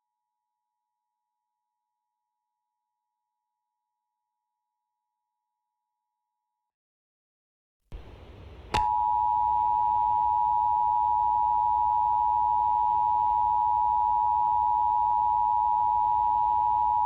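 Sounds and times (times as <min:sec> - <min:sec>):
click: 0:08.7 - 0:09.0.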